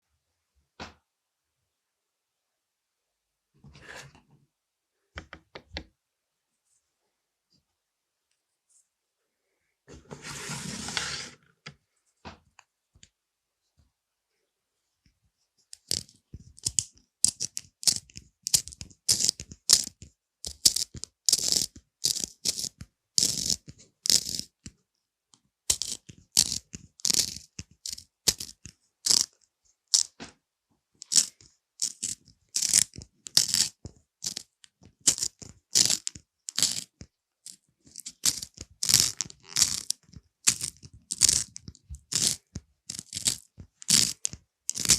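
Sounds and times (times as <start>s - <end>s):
pencil scratching on paper: 10.0s - 11.4s.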